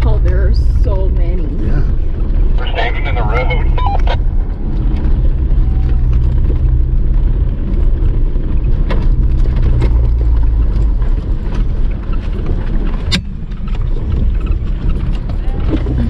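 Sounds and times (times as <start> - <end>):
car engine rumbling: 0.0 - 16.0.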